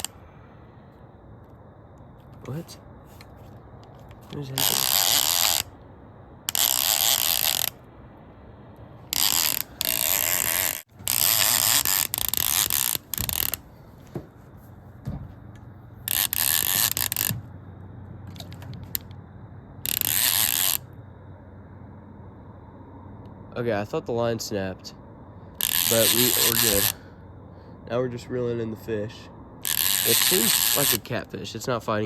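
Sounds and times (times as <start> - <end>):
fishing reel drag buzzing: 3.9 - 5.7, 6.5 - 7.9, 9.0 - 13.7, 16.0 - 17.5, 19.8 - 20.9, 25.6 - 27.1, 29.6 - 31.2.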